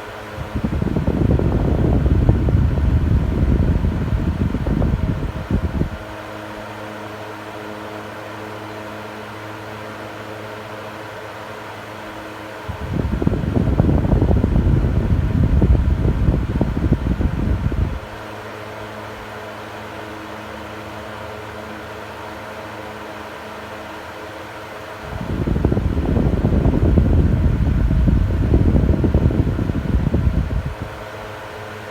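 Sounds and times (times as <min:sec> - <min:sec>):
airflow buffeting microphone: 0:00.0 - 0:06.3, 0:12.6 - 0:18.4, 0:25.0 - 0:31.9
electric fan motor hum: 0:00.0 - 0:31.9.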